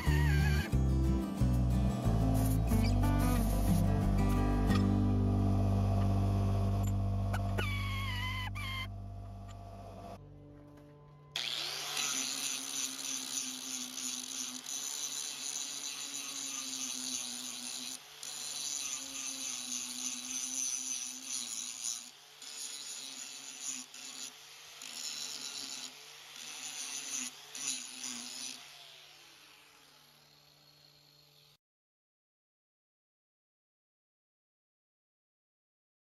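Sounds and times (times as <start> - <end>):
power tool running under load: 1.9 - 8.8, 11.4 - 31.6.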